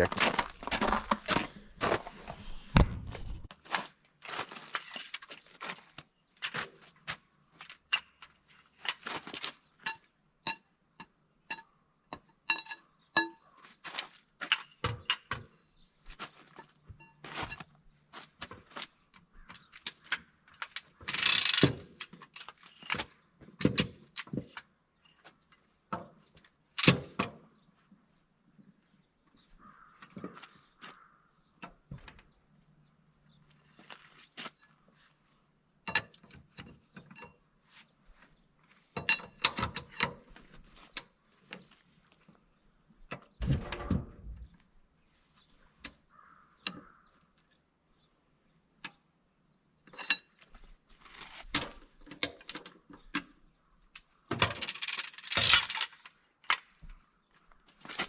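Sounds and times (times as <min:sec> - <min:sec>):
metal tools clinking and knocking: 0:04.6 - 0:06.0, 0:07.7 - 0:13.4, 0:19.8 - 0:26.0, 0:39.0 - 0:41.0, 0:49.9 - 0:50.4, 0:54.4 - 0:56.7.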